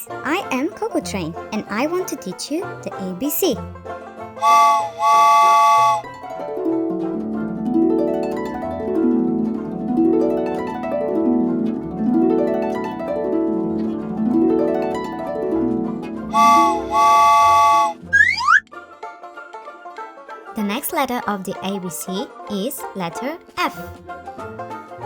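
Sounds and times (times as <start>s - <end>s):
train whistle blowing: 4.4s - 6.1s, 16.3s - 18.6s
plucked harp arpeggios: 5.8s - 18.6s.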